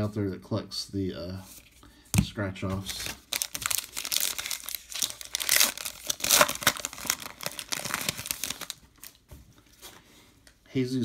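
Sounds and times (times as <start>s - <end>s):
wrapper tearing and crinkling: 2.8s - 9.2s.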